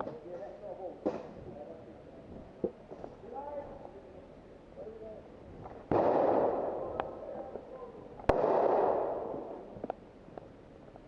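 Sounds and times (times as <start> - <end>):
loud bangs: 5.9 - 7.0, 8.3 - 9.6
short sharp cracks: 8.3 - 9.3.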